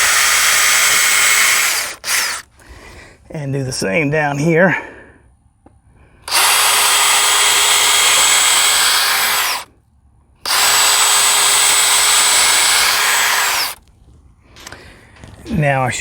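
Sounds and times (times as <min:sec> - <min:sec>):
power drill drilling into wood: 0:00.0 - 0:02.5, 0:06.3 - 0:09.7, 0:10.5 - 0:13.8.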